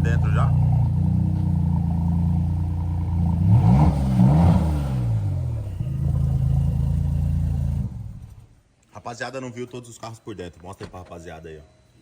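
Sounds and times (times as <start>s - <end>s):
sports car engine idling and revving: 0.0s - 8.6s.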